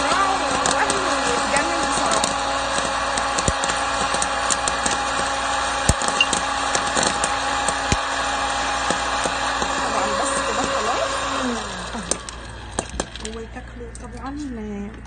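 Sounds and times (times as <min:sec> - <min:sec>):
kernels popping: 0:00.0 - 0:08.2, 0:11.9 - 0:14.4
popcorn maker blower hum: 0:00.0 - 0:15.0.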